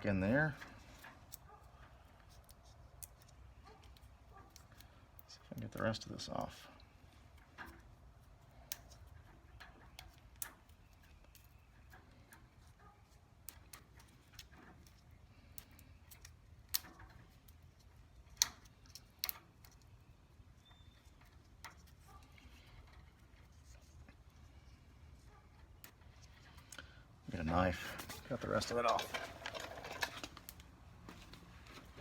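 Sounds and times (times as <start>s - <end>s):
electrical tape peeling: 0.6s - 6.0s.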